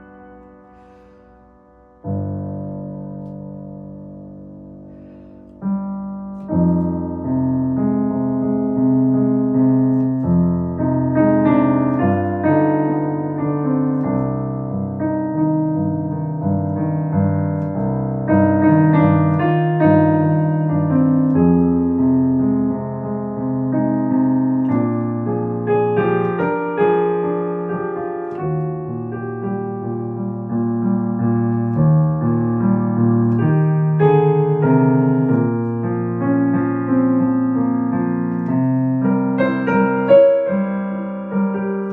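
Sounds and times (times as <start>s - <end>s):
slow solo piano piece: 0.0s - 41.9s.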